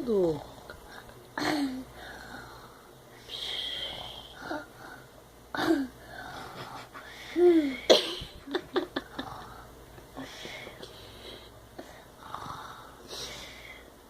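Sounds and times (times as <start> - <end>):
person fake-snoring: 3.3 - 4.7.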